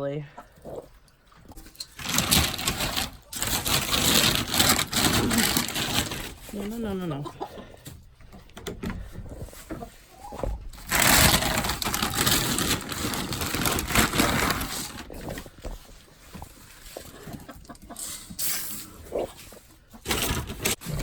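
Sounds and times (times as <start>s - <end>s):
loud rustling and scuffling: 1.5s - 7.0s, 7.9s - 21.0s
chickens clucking: 4.4s - 11.0s, 15.1s - 20.2s.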